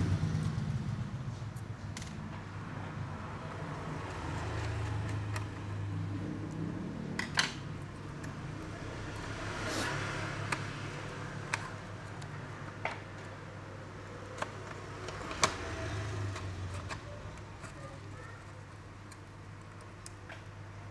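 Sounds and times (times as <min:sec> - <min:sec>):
tools clicking on plastic parts: 0:14.2 - 0:20.5.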